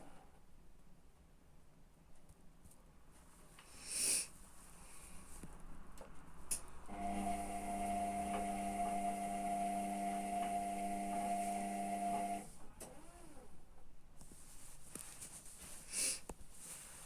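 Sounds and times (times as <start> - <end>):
washing machine electric hum: 6.9 - 13.2.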